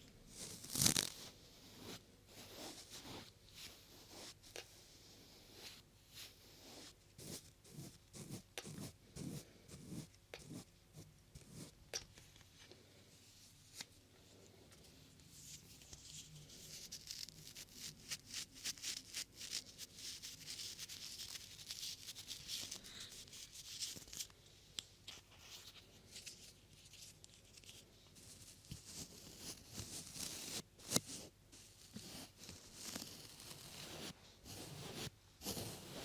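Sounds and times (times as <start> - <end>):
brushing against microphone: 0.3 - 4.5, 31.1 - 36.0.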